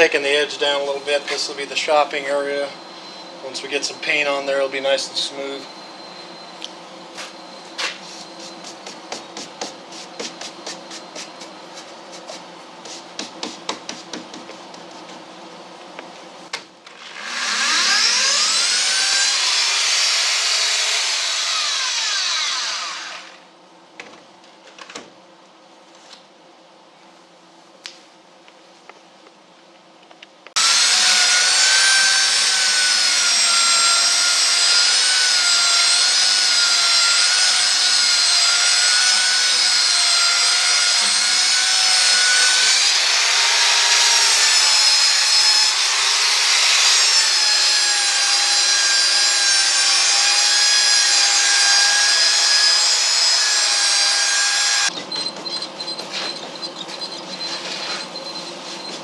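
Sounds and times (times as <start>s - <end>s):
power tool whining on wood: 17.0s - 23.4s, 30.6s - 59.0s.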